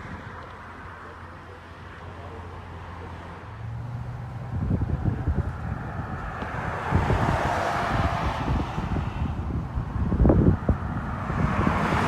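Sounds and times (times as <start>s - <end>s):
gusty wind buffeting microphone: 4.1s - 12.0s.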